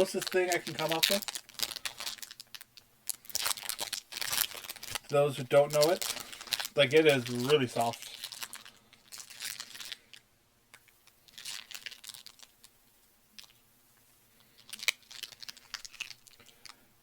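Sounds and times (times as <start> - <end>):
person chewing: 14.6 - 16.8.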